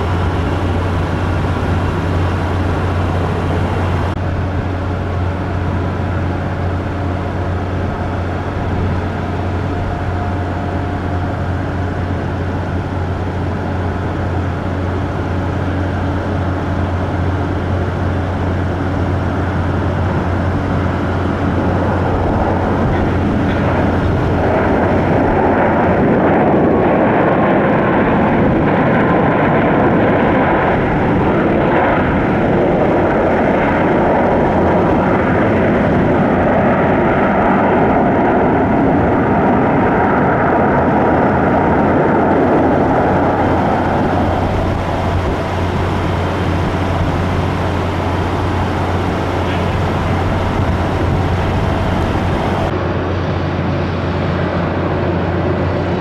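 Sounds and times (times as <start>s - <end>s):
jet engines rushing: 0.0s - 56.0s.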